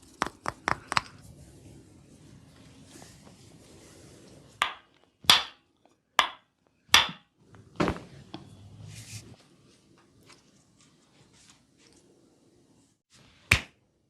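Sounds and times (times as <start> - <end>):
soft rustle of handling: 1.2 - 4.6, 7.6 - 13.4
hands slapping body: 13.5 - 13.8.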